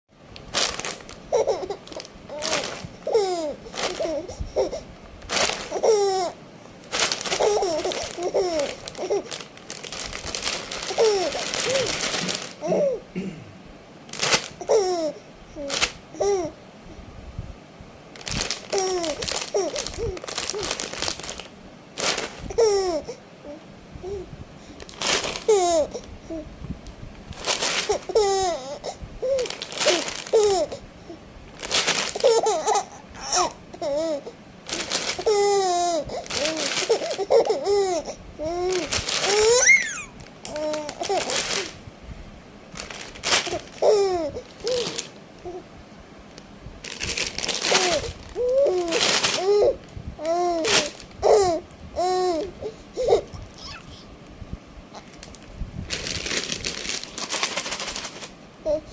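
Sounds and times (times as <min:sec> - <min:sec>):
crinkly rustling: 0:00.4 - 0:13.0, 0:14.1 - 0:16.5, 0:18.1 - 0:23.1, 0:24.8 - 0:26.4, 0:27.2 - 0:30.8, 0:31.5 - 0:41.8, 0:42.7 - 0:45.6, 0:46.8 - 0:53.8, 0:55.0 - 0:58.8
baby-like laughing: 0:01.3 - 0:04.9, 0:05.6 - 0:06.4, 0:07.3 - 0:09.4, 0:10.8 - 0:13.1, 0:14.6 - 0:16.6, 0:22.4 - 0:23.6, 0:25.4 - 0:26.0, 0:27.8 - 0:30.8, 0:32.0 - 0:34.4, 0:35.1 - 0:41.8, 0:43.4 - 0:45.6, 0:47.6 - 0:54.0
small child babbling: 0:10.9 - 0:12.0, 0:32.2 - 0:34.4, 0:35.2 - 0:41.7, 0:43.4 - 0:45.7, 0:47.7 - 0:54.1, 0:58.7 - 0:58.9.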